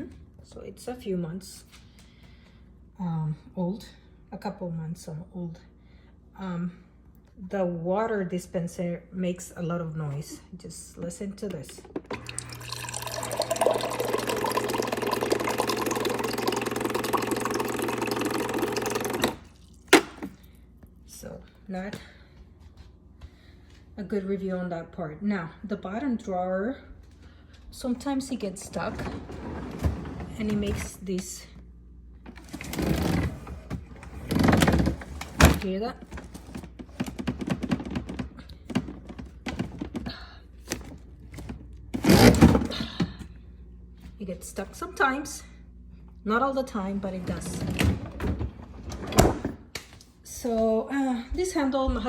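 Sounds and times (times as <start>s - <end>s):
water dispenser buzzing hum: 11.6s - 20.6s
drawer scraping: 28.4s - 31.0s, 32.3s - 36.6s, 41.3s - 42.8s, 47.1s - 49.6s.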